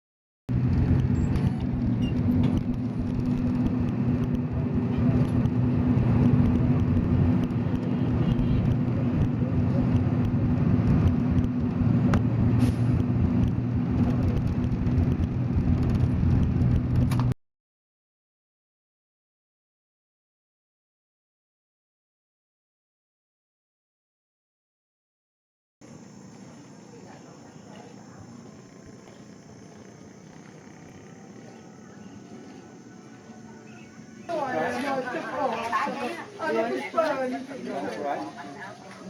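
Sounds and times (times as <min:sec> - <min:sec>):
engine exhaust with deep drone: 0:00.5 - 0:17.4.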